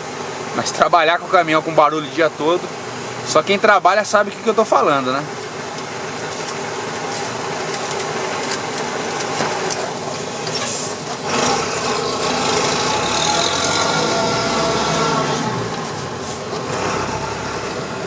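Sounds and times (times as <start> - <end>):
diesel truck engine: 0.0 - 18.0.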